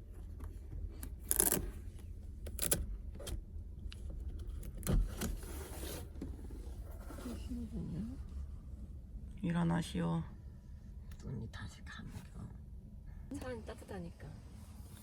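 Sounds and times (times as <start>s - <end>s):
steady low hum: 0.0s - 15.0s
rustling and handling noises: 4.0s - 8.5s.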